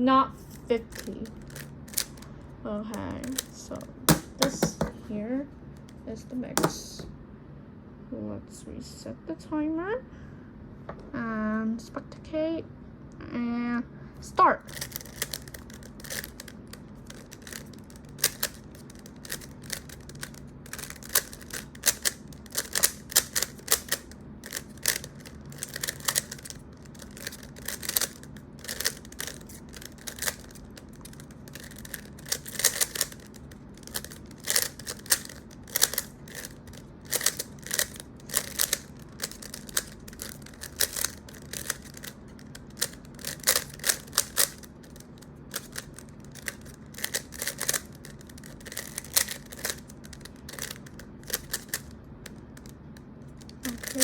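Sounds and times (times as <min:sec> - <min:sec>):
low steady hum: 0:00.0 - 0:54.0
plastic puzzle cube clicking: 0:00.9 - 0:02.2, 0:03.2 - 0:04.8, 0:14.7 - 0:52.7, 0:53.4 - 0:54.0.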